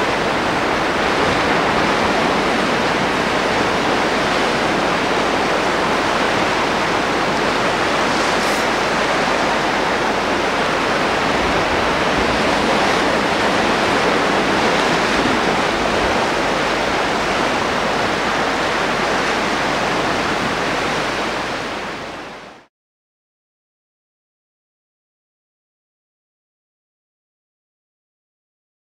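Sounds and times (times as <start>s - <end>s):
coastal wind: 0.0s - 22.7s
sea surf rushing: 0.0s - 22.7s.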